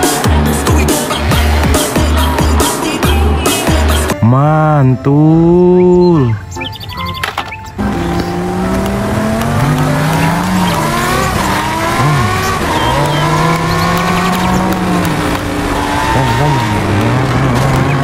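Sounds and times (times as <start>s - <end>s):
car engine revving: 0.0s - 4.2s, 7.8s - 18.0s.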